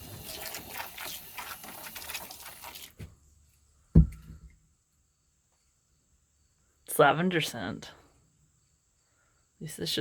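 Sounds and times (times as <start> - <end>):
loud thump: 3.9 - 4.5.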